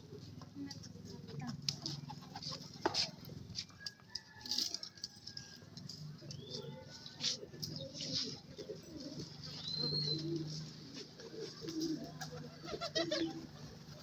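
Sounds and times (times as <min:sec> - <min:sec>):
pigeons cooing: 0:05.4 - 0:14.0.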